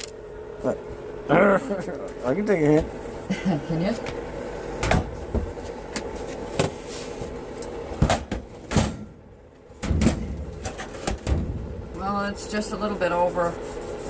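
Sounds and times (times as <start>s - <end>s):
knocks and clunks of objects: 9.8s - 11.7s.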